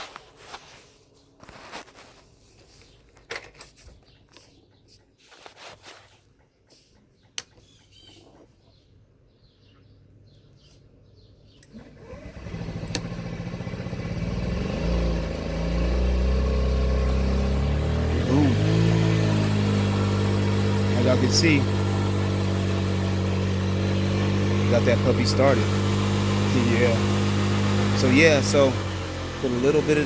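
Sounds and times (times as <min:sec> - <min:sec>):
scooter engine starting and running: 0:11.5 - 0:30.0.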